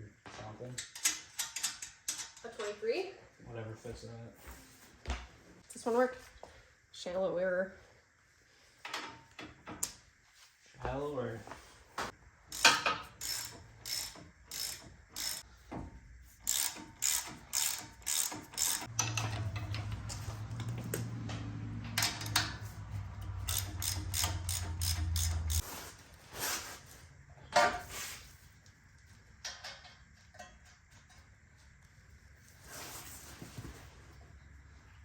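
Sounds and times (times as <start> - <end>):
socket ratchet clicking: 12.5 - 15.4, 16.4 - 19.4, 23.2 - 25.6.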